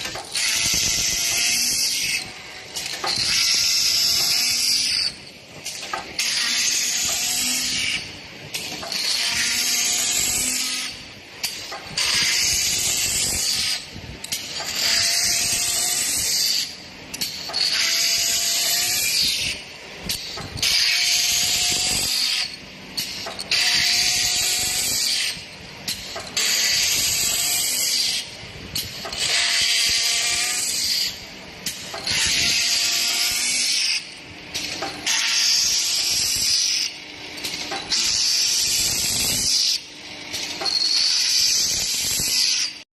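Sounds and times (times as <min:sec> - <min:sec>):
high-pitched sanding machine: 0:08.8 - 0:11.1, 0:12.0 - 0:16.8, 0:17.5 - 0:19.6, 0:23.3 - 0:25.4, 0:34.8 - 0:36.9, 0:40.6 - 0:42.8.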